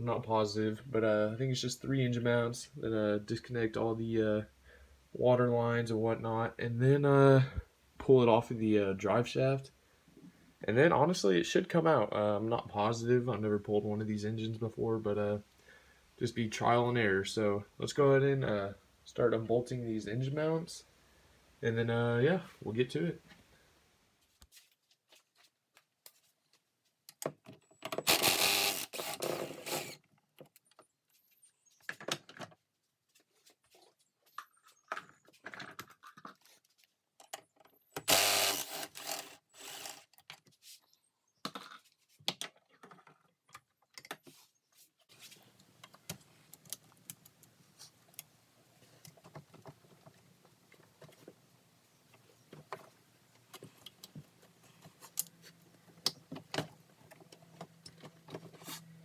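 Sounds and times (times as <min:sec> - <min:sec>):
power tool bursts: 0:28.0 - 0:30.0, 0:38.0 - 0:40.1.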